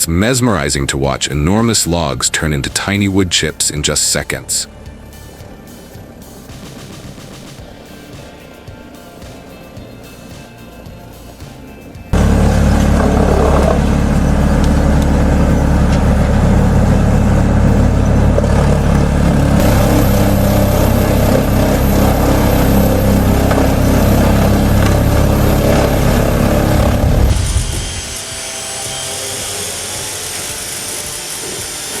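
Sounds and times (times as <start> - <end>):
large machine engine running: 11.9 - 32.0.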